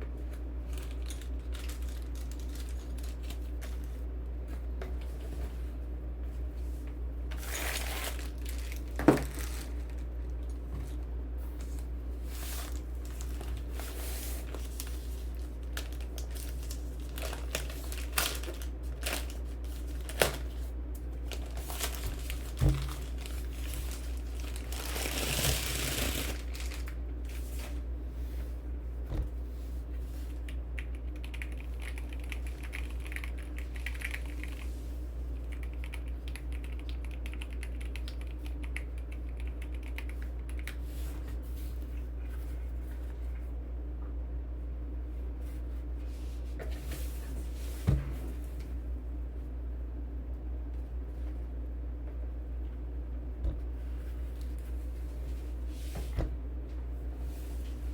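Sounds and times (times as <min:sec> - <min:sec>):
steady low hum: 0:00.0 - 0:57.9
packaging crinkling and rustling: 0:00.6 - 0:03.9, 0:07.3 - 0:10.2, 0:12.4 - 0:27.8.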